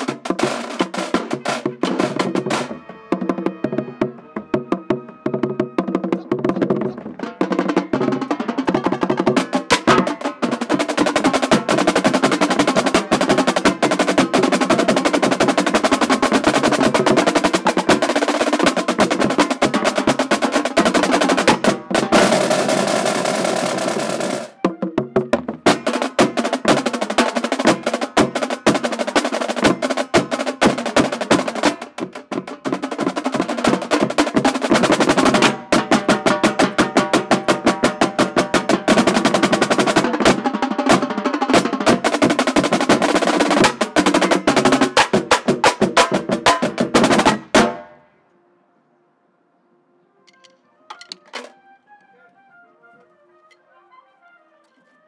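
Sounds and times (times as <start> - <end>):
marching drumline: 0.0 - 48.0.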